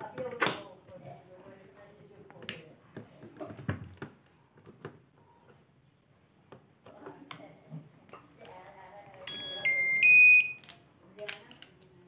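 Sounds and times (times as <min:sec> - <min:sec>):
electronic power-on beep tune: 0:09.3 - 0:10.6.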